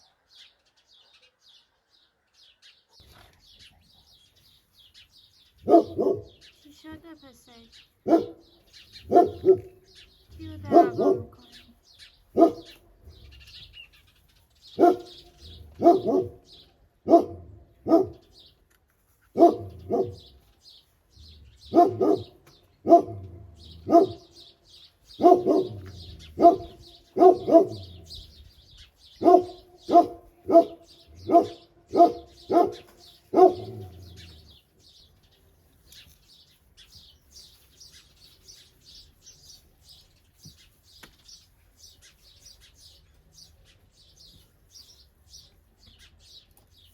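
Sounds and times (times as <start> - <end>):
faint birds chirping: 0.0 - 46.9
dog barking: 5.6 - 6.4, 8.0 - 9.8, 10.6 - 11.6, 12.3 - 12.8, 14.8 - 18.3, 19.4 - 20.3, 21.7 - 24.4, 25.1 - 28.1, 29.2 - 34.0.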